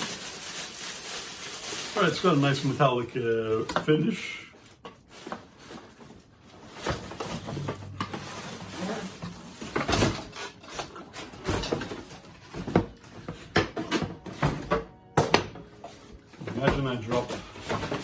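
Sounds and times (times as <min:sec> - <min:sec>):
packaging rustling: 0:00.0 - 0:18.0
knocks and bumps of boxes handled: 0:05.2 - 0:18.0.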